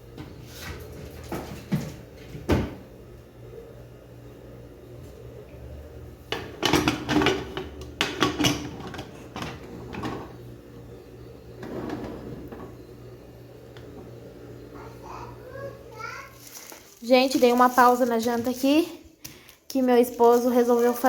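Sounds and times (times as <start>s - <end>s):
low steady hum: 0.0s - 17.8s
kitchen knocks and clatters: 0.2s - 2.8s, 6.3s - 10.4s.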